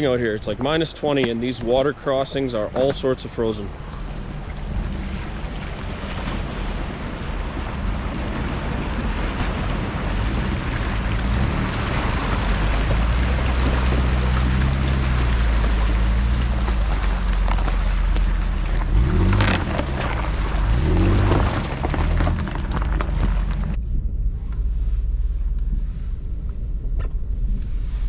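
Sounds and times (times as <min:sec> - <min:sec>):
vehicle engine humming: 0:00.0 - 0:28.0
rushing noise: 0:18.9 - 0:28.0.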